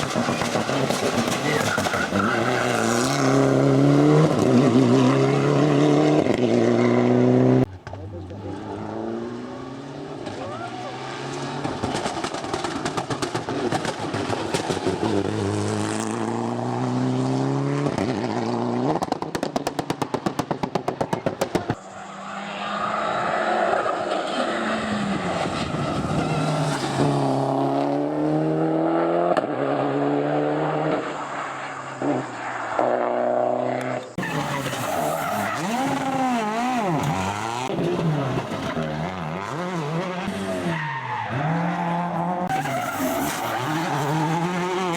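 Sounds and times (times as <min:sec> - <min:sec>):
car engine accelerating hard: 0:00.0 - 0:19.3, 0:21.8 - 0:31.2, 0:31.9 - 0:44.9
engine sharp pops: 0:11.6 - 0:15.0, 0:18.9 - 0:21.8.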